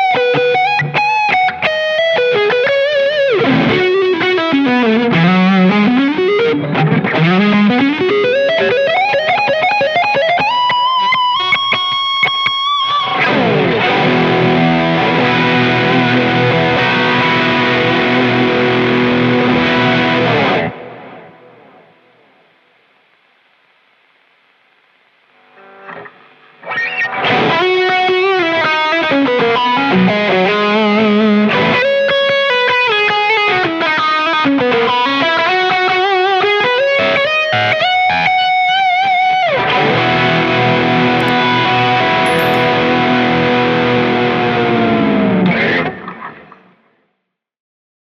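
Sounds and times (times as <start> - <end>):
distorted electric guitar lead: 0.0 - 46.8
electric guitar chord ringing: 41.1 - 45.4.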